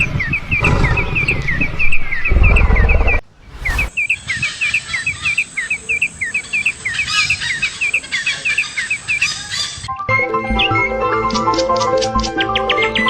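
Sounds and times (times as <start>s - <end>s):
bird chirping: 0.2s - 10.0s
background music: 10.0s - 13.0s.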